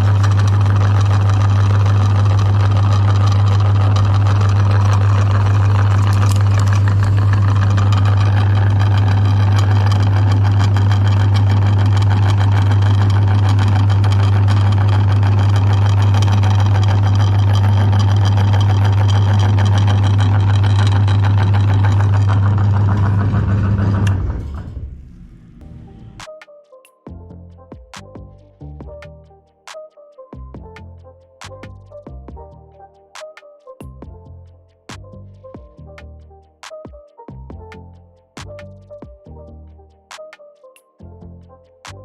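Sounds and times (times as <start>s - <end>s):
electric meat grinder running: 0.0s - 24.9s.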